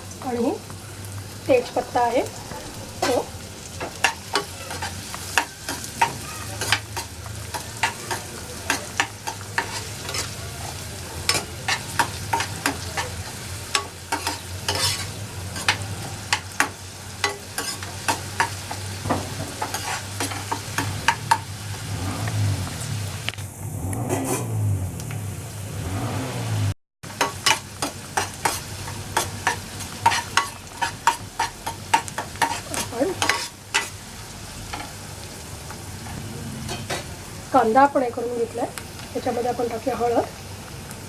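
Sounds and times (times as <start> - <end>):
onion sizzling in a pan: 0.0 - 41.0
spatula scraping a pan: 1.5 - 21.9, 24.1 - 24.6, 27.1 - 34.0, 36.0 - 37.1.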